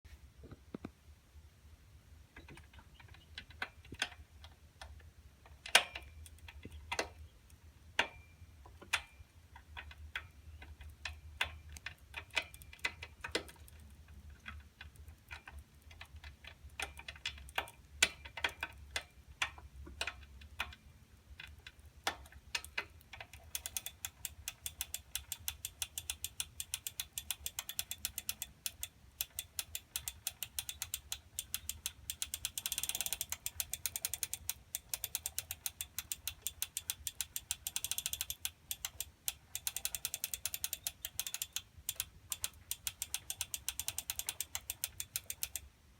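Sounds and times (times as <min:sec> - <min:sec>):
tricycle chain clunking and clicking: 0:05.5 - 0:07.2, 0:08.0 - 0:45.6
fast even ticking: 0:23.4 - 0:45.6.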